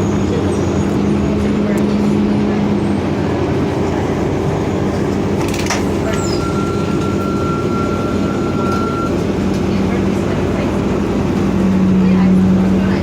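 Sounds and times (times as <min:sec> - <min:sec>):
bus cabin hum: 0:00.0 - 0:13.0.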